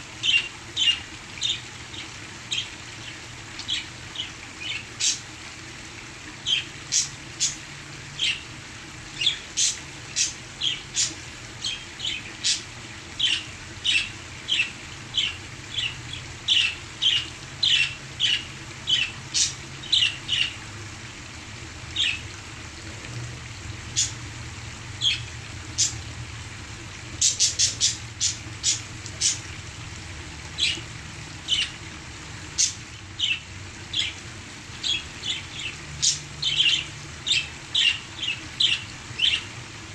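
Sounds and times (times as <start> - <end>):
parakeets chirping and squawking: 8.2 - 8.4, 9.1 - 20.6, 21.9 - 22.3, 24.9 - 26.0, 27.2 - 29.4, 30.5 - 31.8, 32.5 - 34.2, 34.8 - 39.5.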